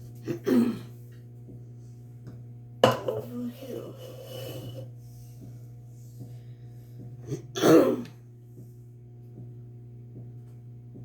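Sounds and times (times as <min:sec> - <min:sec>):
low electrical hum: 0:00.0 - 0:11.0
person clearing throat: 0:00.2 - 0:01.0, 0:07.2 - 0:08.2.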